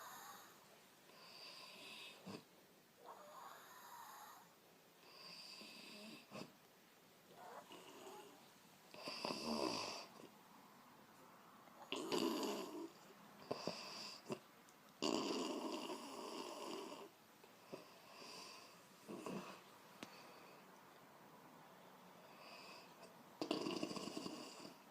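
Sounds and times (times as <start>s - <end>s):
woman snoring: 0.0s - 0.6s, 3.1s - 4.5s, 5.1s - 6.5s, 9.0s - 10.3s, 11.8s - 14.4s, 15.0s - 17.1s, 22.3s - 24.8s.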